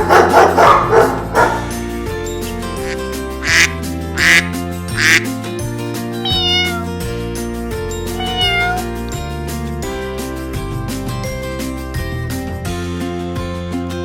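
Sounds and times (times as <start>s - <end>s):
background music: 0.0s - 14.0s
cat meowing: 6.2s - 7.0s, 8.0s - 9.0s.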